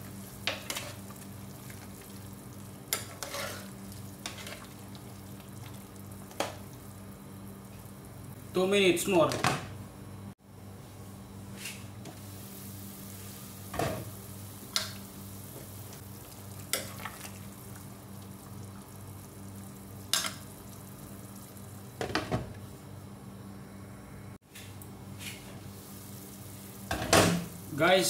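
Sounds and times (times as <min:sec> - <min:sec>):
soup bubbling in a pot: 0:00.0 - 0:08.4, 0:12.3 - 0:22.0.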